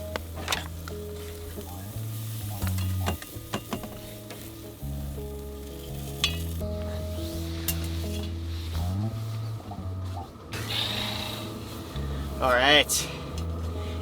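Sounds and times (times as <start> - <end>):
steaks sizzling on a grill: 0.0 - 9.0
background music: 0.0 - 14.0.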